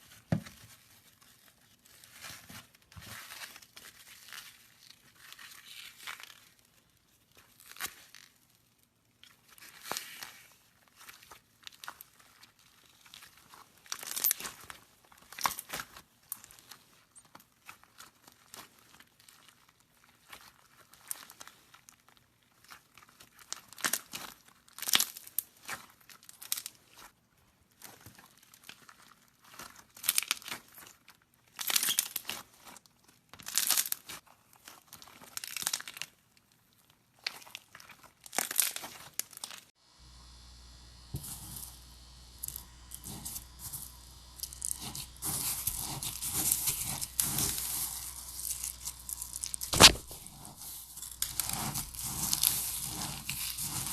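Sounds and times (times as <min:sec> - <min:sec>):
steady low hum: 0:39.8 - 0:53.9
slime squishing and crackling: 0:42.3 - 0:53.9.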